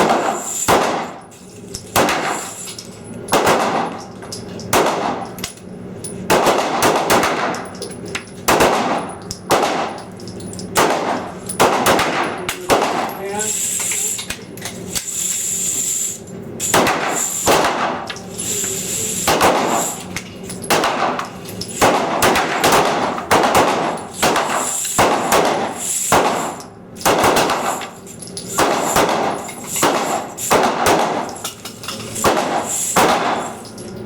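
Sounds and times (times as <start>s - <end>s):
pistol shots: 0.0s - 1.2s, 1.9s - 2.5s, 3.3s - 4.1s, 4.7s - 5.5s, 6.3s - 7.8s, 8.4s - 10.1s, 10.7s - 13.2s, 16.6s - 18.1s, 19.2s - 20.0s, 20.7s - 31.4s, 32.2s - 33.6s.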